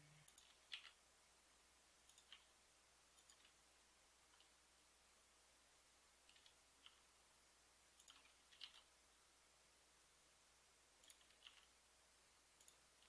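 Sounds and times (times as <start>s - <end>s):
mouse and keyboard clicks: 0.3s - 1.0s, 2.1s - 2.6s, 3.2s - 3.6s, 6.3s - 7.0s, 8.0s - 8.9s, 11.0s - 11.8s.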